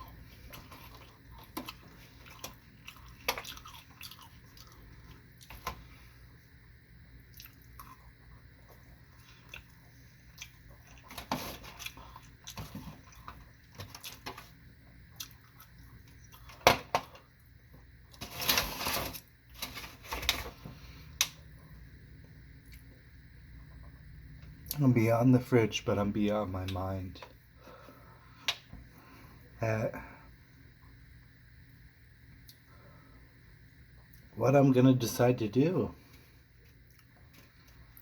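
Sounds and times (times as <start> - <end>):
person chewing food: 0.0 - 5.6, 7.3 - 14.5, 15.1 - 16.6, 36.5 - 38.0.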